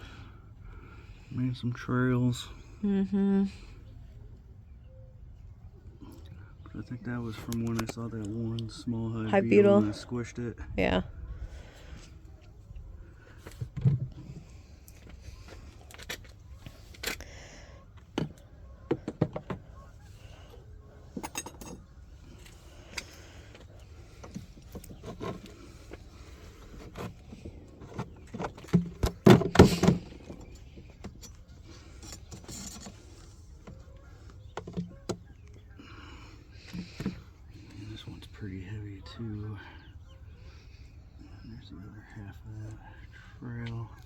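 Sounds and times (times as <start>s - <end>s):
wooden frames clicking and knocking: 18.0s - 19.8s, 26.6s - 35.4s.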